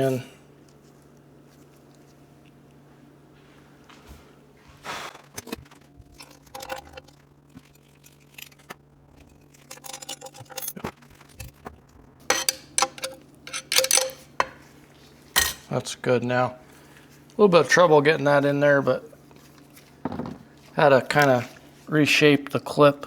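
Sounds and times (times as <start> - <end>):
small metal parts clicking: 6.1 - 11.6, 12.3 - 14.5
bright metal rings: 12.3 - 14.7.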